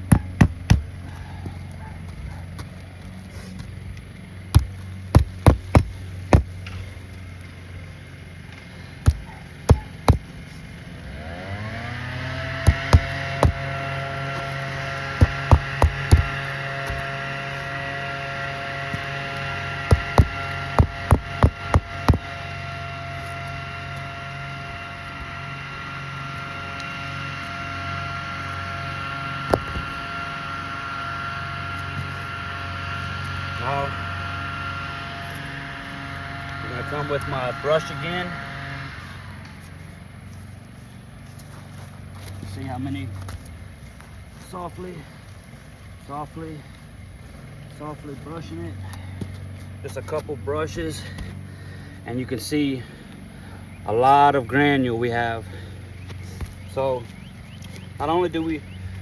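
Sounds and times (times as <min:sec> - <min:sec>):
motor humming: 0:00.0 - 0:59.0
hammer strikes on roof: 0:04.6 - 0:06.5, 0:09.0 - 0:10.2, 0:12.7 - 0:13.6, 0:15.2 - 0:16.3, 0:19.9 - 0:22.3.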